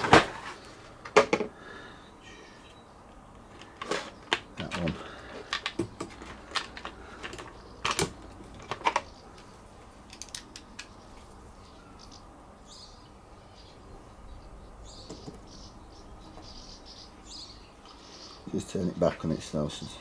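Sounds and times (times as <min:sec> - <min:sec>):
faint high chirping: 0:01.7 - 0:03.2
tools clicking and knocking: 0:03.5 - 0:11.0.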